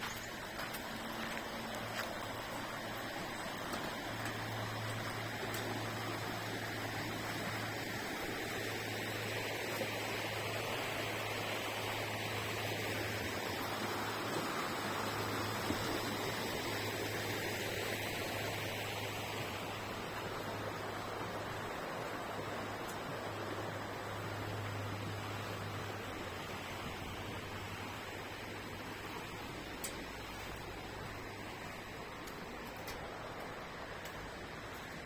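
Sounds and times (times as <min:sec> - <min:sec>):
river water rushing: 0:00.0 - 0:35.0.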